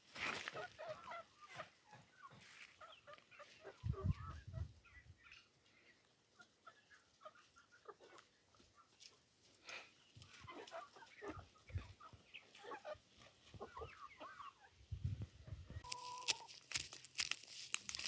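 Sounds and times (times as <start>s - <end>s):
chickens clucking: 0.1s - 17.3s.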